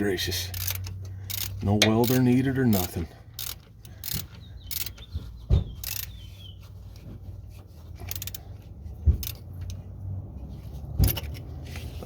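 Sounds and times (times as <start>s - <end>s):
metal tools clinking: 0.0s - 5.1s
dull thumps: 5.0s - 6.1s.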